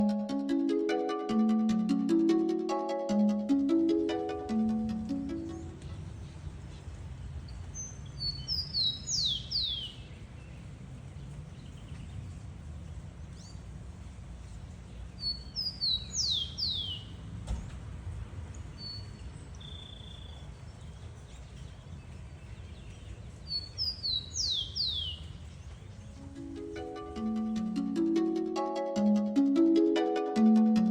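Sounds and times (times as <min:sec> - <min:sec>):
sparrow singing: 0:04.2 - 0:10.6, 0:15.1 - 0:17.2, 0:18.6 - 0:27.9.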